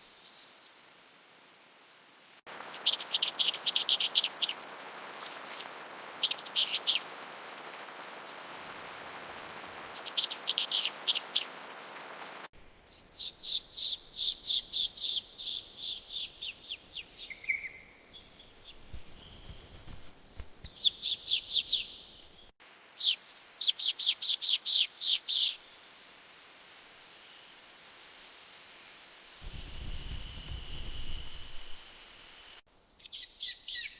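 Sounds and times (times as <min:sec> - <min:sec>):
bird chirping: 0:12.8 - 0:22.5.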